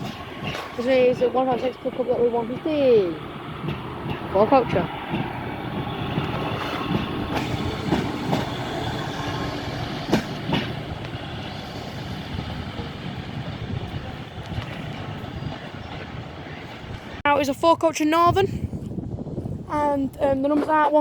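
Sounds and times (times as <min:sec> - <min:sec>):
wheel clacks over rail joints: 0:00.0 - 0:16.4
diesel train rumbling: 0:00.0 - 0:20.9.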